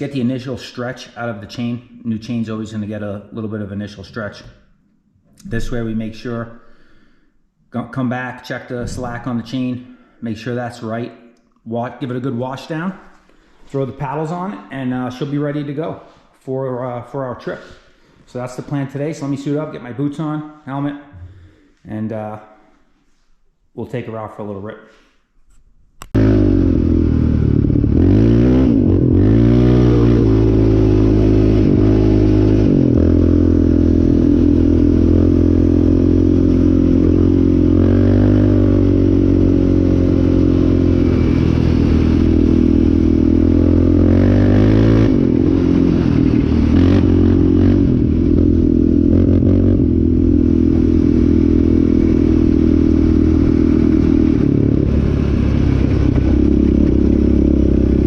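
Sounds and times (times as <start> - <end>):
quad engine revving: 26.2 - 58.0.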